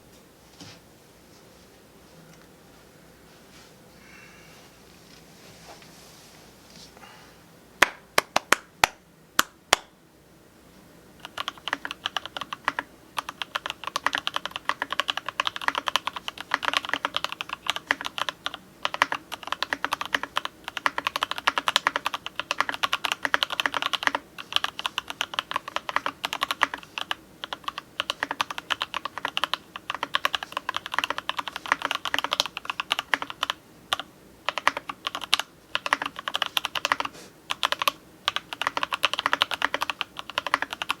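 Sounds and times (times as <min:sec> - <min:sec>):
mechanical keyboard typing: 0:11.2 - 0:41.0.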